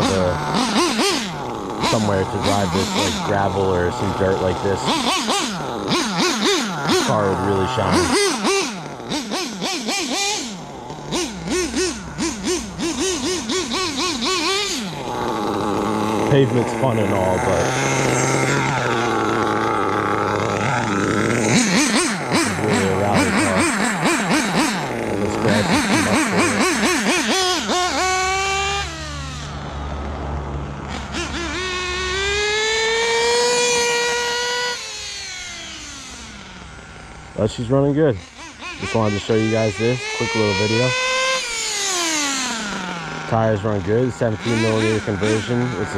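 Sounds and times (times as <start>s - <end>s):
nitro engine revving: 0.0s - 45.9s.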